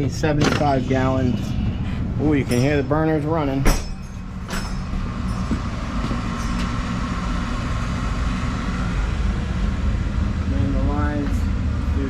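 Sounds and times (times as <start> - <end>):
oil burner rumbling: 0.0 - 12.0
steady whine: 0.0 - 12.0.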